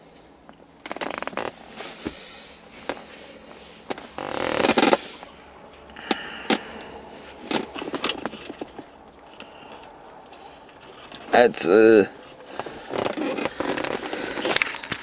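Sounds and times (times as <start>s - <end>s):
rustling scrape: 0.9s - 5.9s, 12.2s - 15.0s.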